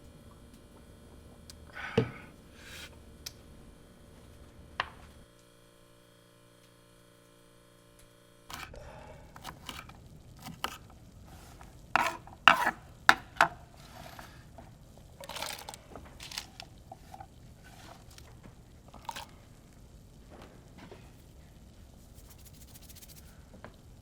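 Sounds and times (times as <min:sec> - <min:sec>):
electrical hum: 0:00.0 - 0:24.0
handling scrapes and rustles: 0:09.4 - 0:12.8, 0:13.8 - 0:14.5, 0:15.2 - 0:18.4, 0:22.1 - 0:23.3.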